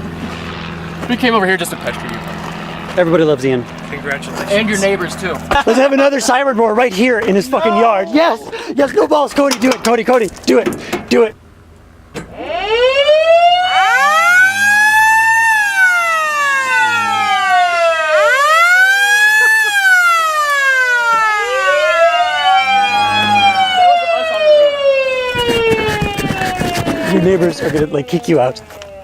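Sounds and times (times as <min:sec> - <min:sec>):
siren wailing: 0:07.4 - 0:08.3, 0:12.2 - 0:29.0.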